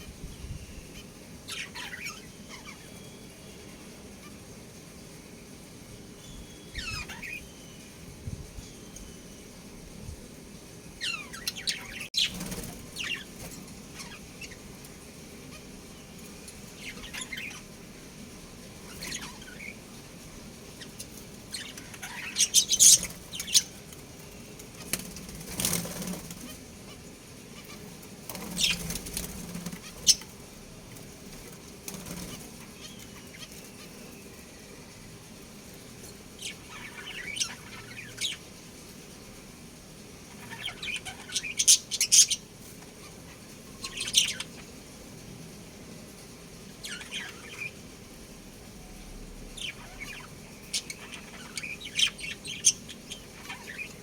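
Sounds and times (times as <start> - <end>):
budgerigars chirping: 0.8 - 3.0, 6.7 - 7.6, 20.8 - 23.8, 27.6 - 30.4, 40.3 - 42.4, 46.8 - 47.8, 49.6 - 54.0
wings flapping: 12.2 - 14.2, 24.7 - 26.8, 28.2 - 30.4, 31.0 - 33.9.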